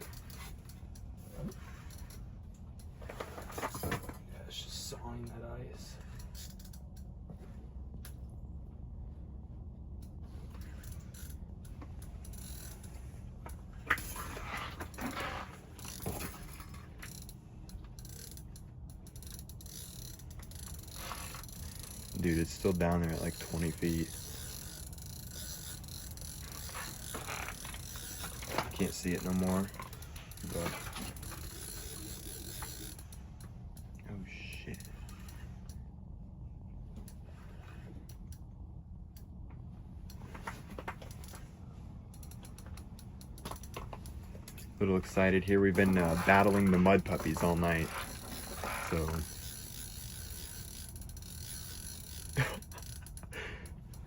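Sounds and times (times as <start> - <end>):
fishing reel ratcheting: 0.0 - 2.3, 6.1 - 7.1, 10.0 - 13.1, 13.9 - 34.0, 34.7 - 35.8, 42.1 - 54.0
steady low hum: 0.0 - 54.0
steady low rumble: 0.0 - 54.0.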